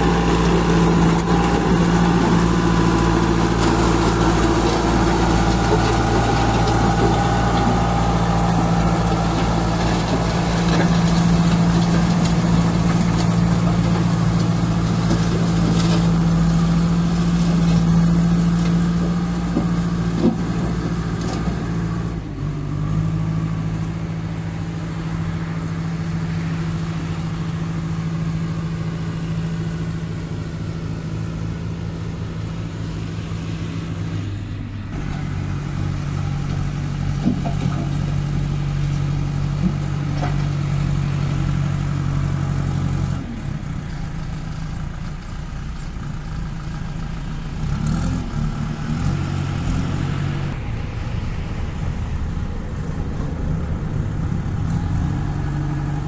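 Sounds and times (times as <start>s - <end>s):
diesel engine running: 0.0s - 56.0s.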